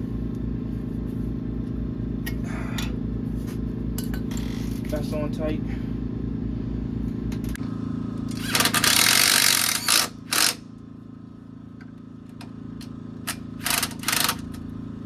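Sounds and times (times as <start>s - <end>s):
steady machine hum: 0.0s - 15.0s
power tool bursts: 8.2s - 10.6s, 13.3s - 14.6s.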